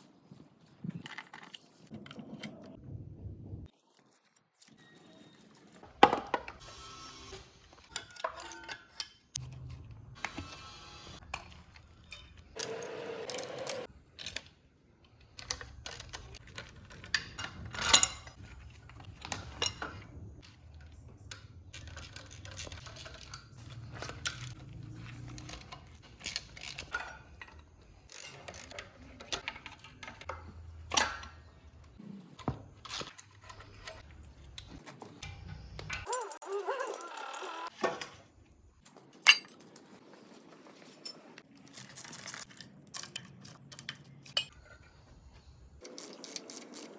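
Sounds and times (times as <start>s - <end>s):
metal tools clicking and clinking: 7.8s - 9.6s, 11.2s - 14.5s, 20.7s - 32.0s, 32.9s - 38.1s, 38.9s - 45.0s.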